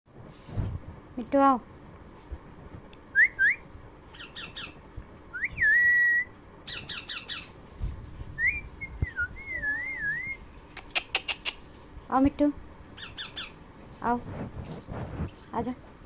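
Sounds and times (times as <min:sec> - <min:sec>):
parrot whistling: 0:03.2 - 0:03.6, 0:04.2 - 0:07.5, 0:08.4 - 0:10.4
parrot squawking chatter: 0:04.2 - 0:04.8, 0:10.7 - 0:11.7, 0:13.0 - 0:13.6.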